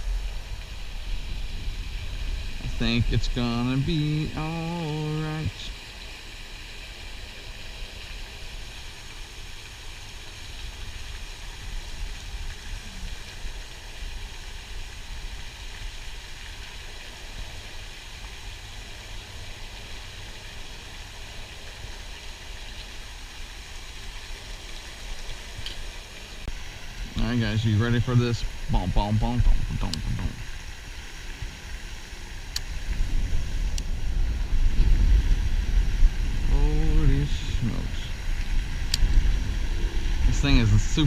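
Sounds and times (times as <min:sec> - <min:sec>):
wind on microphone: 0:00.0 - 0:04.4, 0:28.5 - 0:30.6, 0:32.5 - 0:41.0.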